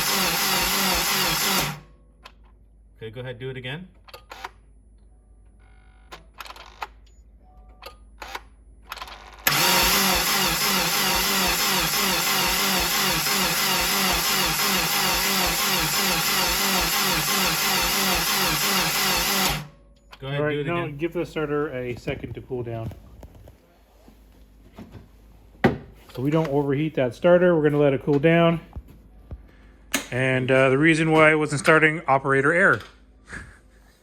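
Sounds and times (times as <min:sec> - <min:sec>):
starter motor cranking engine: 0:00.0 - 0:01.9, 0:08.9 - 0:19.7.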